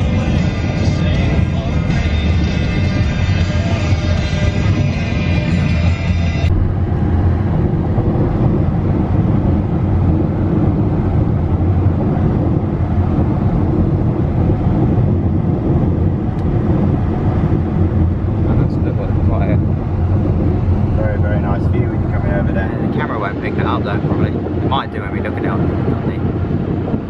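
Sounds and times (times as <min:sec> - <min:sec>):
car road and engine noise: 0:00.0 - 0:27.0.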